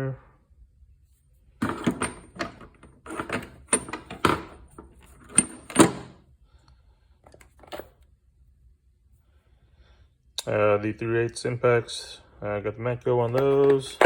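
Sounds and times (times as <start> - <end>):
metal sockets clattering in drawer: 1.6 - 6.1.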